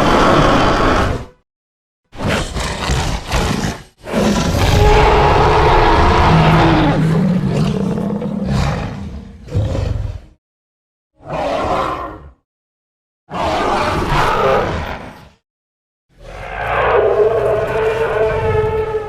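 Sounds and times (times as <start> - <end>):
deep dinosaur roar: 2.5 - 10.4, 16.2 - 19.0.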